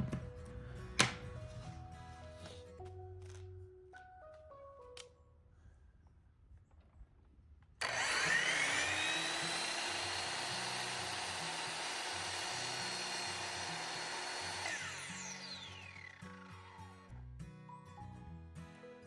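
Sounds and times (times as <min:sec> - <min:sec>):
miter saw cutting wood: 0:07.8 - 0:17.1.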